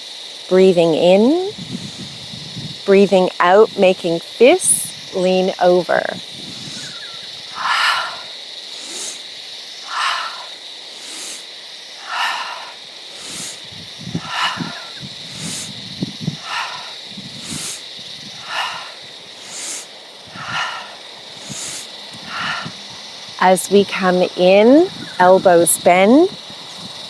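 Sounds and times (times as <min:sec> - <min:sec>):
high insect drone: 0:00.0 - 0:27.0
short raspy animal call: 0:06.7 - 0:09.2, 0:09.8 - 0:11.4, 0:12.0 - 0:13.6, 0:14.2 - 0:15.7, 0:18.4 - 0:22.8.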